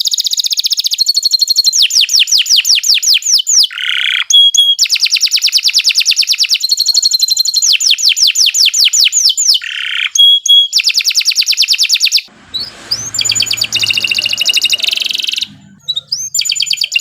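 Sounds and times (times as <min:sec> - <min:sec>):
canary singing: 0:09.0 - 0:17.0.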